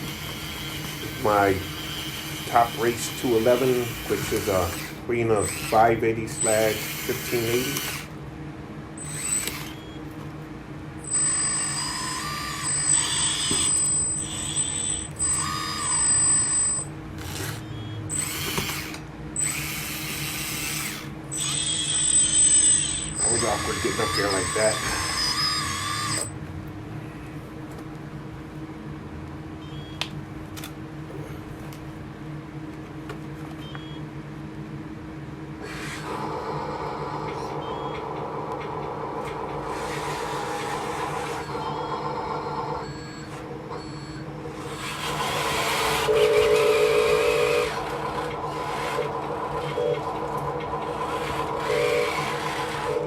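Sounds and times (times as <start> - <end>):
hydraulic pump whining: 0.0 - 8.2, 9.0 - 10.0, 11.0 - 26.4, 35.6 - 53.0
electric hum: 0.0 - 32.7, 33.6 - 53.0.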